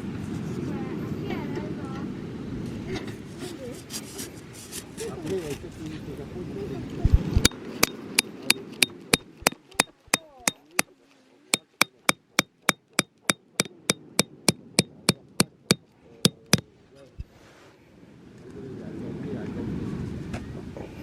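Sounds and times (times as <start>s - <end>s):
hammering with metallic ring: 7.4s - 10.9s, 11.6s - 16.7s.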